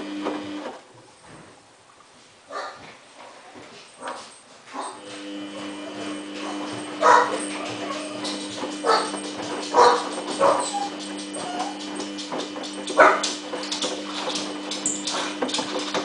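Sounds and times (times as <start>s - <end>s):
dog barking: 2.5s - 2.8s, 4.0s - 5.0s, 5.6s - 11.8s, 13.0s - 13.4s
washing machine drum turning: 5.1s - 16.0s.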